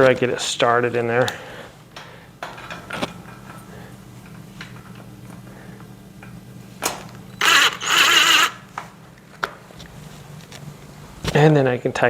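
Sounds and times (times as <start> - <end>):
screw scraping in metal: 7.4 - 8.6.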